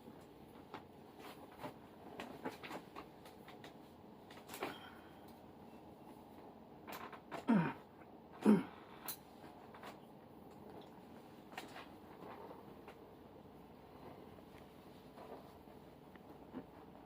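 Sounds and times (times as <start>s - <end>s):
person groaning: 7.4s - 7.8s, 8.4s - 8.8s.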